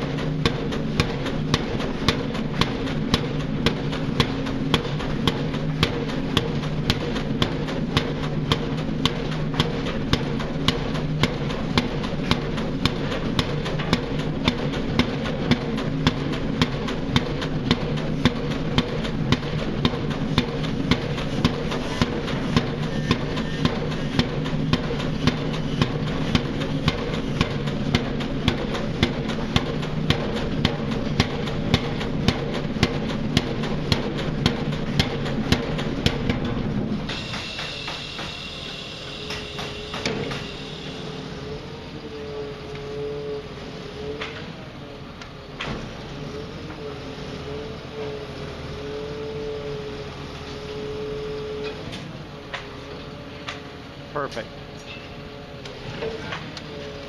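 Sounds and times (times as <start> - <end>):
pile driver hammering: 0.0 - 41.8
engine drone: 0.0 - 57.0.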